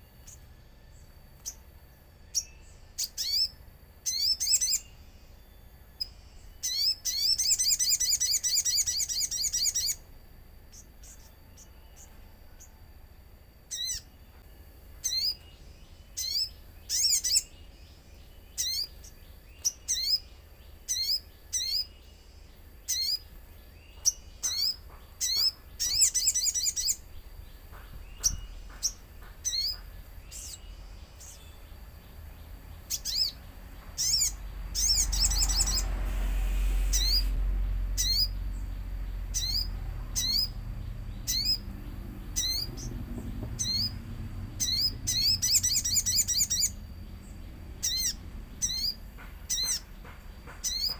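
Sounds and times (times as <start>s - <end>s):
bird chirping: 0.0s - 50.9s
rush of noise with low rumble: 23.4s - 50.9s.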